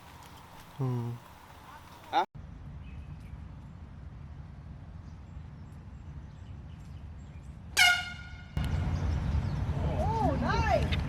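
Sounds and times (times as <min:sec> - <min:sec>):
air horn blast: 0:07.8 - 0:08.6.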